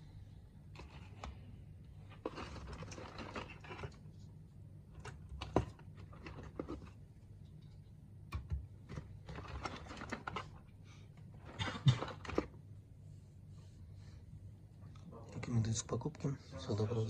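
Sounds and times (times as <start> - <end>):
steady low hum: 0.0 - 17.0
small objects clicking and rustling: 2.1 - 4.0.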